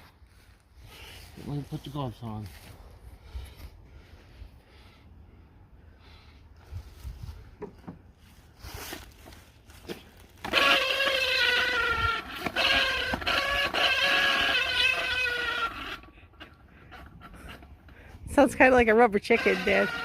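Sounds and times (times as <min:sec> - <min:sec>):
fan squealing: 0:10.4 - 0:16.3, 0:19.2 - 0:20.0.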